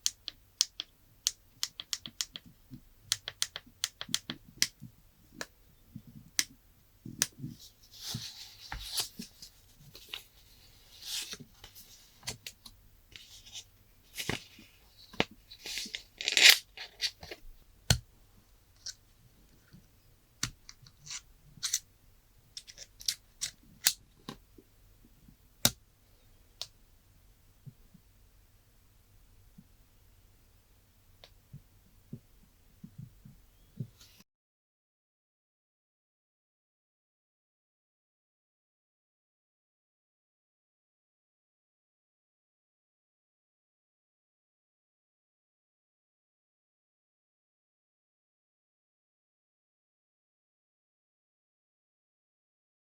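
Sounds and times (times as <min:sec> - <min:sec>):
packaging rustling and scraping: 0:13.2 - 0:17.4.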